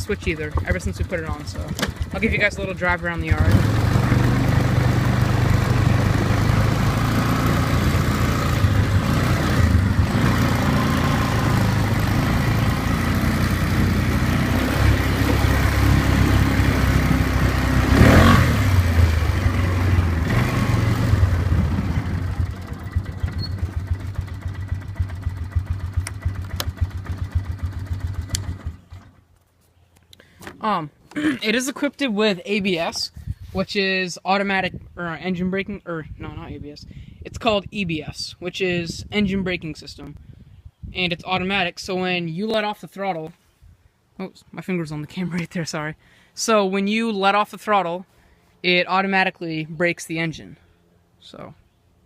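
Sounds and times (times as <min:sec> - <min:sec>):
quad bike engine running: 0:00.0 - 0:29.2.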